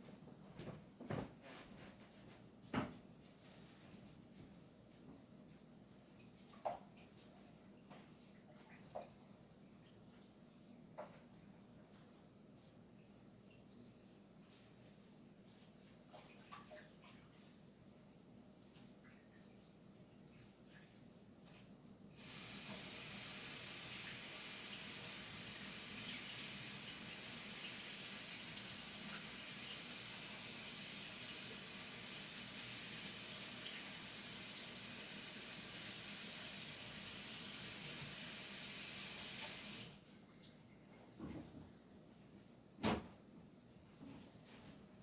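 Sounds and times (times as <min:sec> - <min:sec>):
water running from sink tap: 0:22.2 - 0:40.0.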